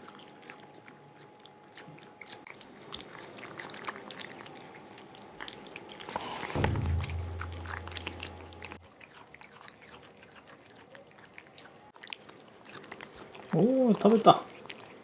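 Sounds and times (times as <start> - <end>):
cat chewing wet food: 0.0 - 15.0
low hum: 6.4 - 8.8.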